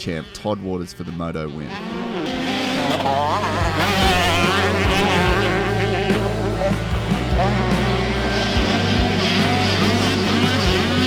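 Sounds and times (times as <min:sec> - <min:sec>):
motocross bikes revving: 0:00.0 - 0:11.0
background music: 0:02.3 - 0:11.0.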